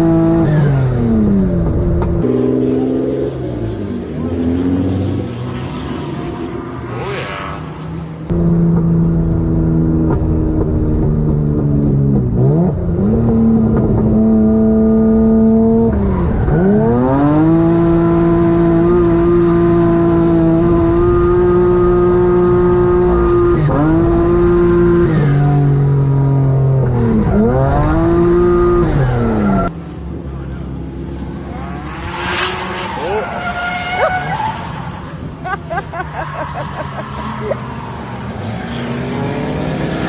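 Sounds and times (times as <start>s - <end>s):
car engine at high revs: 0.0s - 29.8s.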